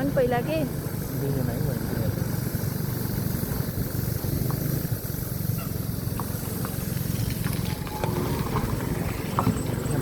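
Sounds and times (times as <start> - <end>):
road and wind noise: 0.0 - 10.0
vehicle engine rumble: 0.0 - 10.0.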